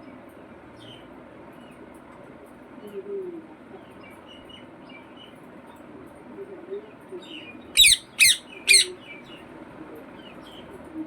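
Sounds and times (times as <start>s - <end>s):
parrot chirping: 7.8s - 9.0s
parrot squawking: 7.8s - 9.0s.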